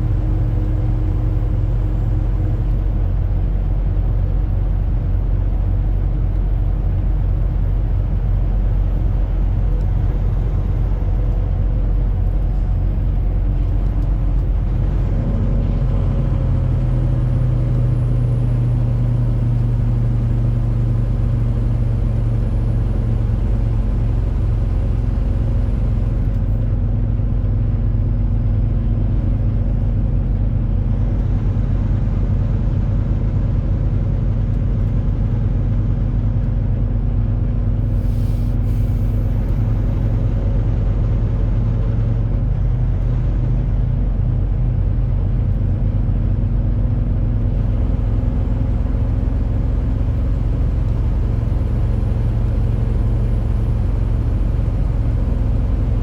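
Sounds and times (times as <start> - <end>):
diesel truck engine droning: 0.0 - 56.0
short air hiss: 37.9 - 39.3.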